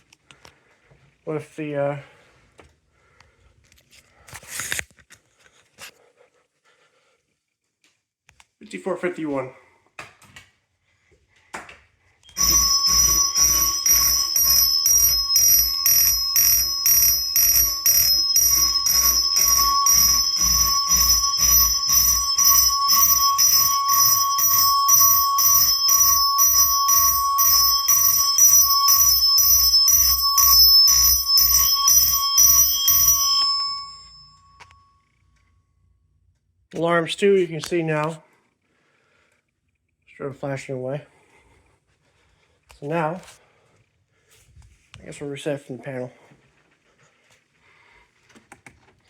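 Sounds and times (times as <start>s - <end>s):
mechanical fire alarm chime ringing: 12.2s - 35.3s.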